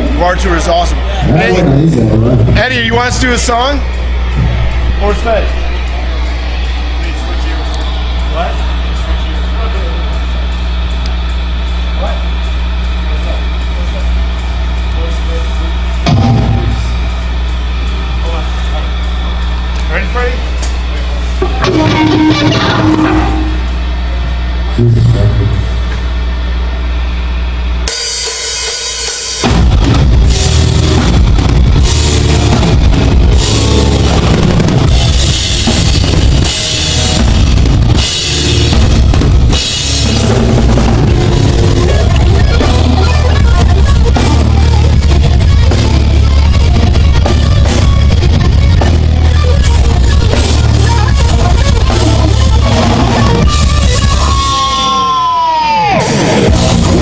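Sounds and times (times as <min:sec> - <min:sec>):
heavy rock band playing live: 0:07.6 - 0:19.7, 0:20.4 - 0:26.6, 0:27.8 - 0:57.0
pounding bass drum: 0:16.0 - 0:17.6, 0:29.4 - 0:54.8, 0:56.4 - 0:57.0.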